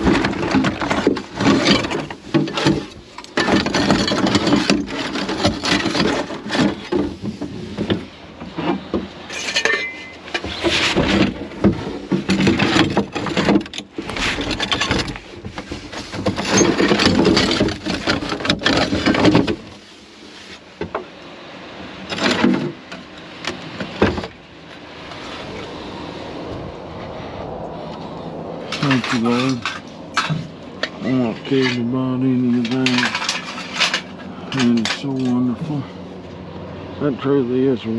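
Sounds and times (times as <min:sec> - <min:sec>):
junk clattering and knocking: 0:00.0 - 0:19.8, 0:22.0 - 0:25.3, 0:28.6 - 0:35.9
rustling: 0:00.0 - 0:21.2, 0:22.0 - 0:36.3
glass and metal clinks: 0:09.3 - 0:10.2.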